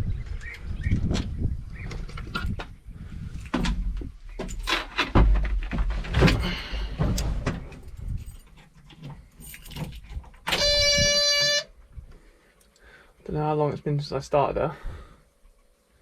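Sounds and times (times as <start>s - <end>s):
knocks clicks and rattling: 3.4s - 10.8s
keys rattling: 7.8s - 10.4s
electronic buzzer tone: 10.5s - 11.7s.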